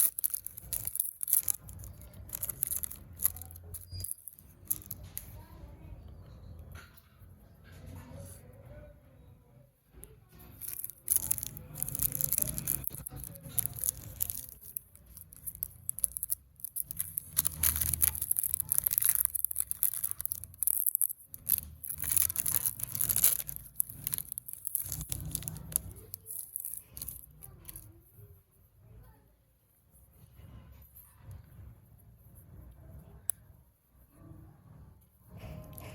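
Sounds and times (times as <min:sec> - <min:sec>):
candy wrappers crinkling and tearing: 0:00.0 - 0:05.4, 0:10.3 - 0:28.0.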